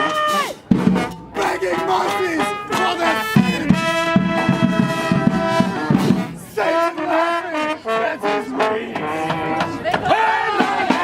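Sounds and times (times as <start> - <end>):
drums: 0.0 - 1.4, 3.3 - 6.6, 9.0 - 11.0
brass horns playing: 0.0 - 11.0.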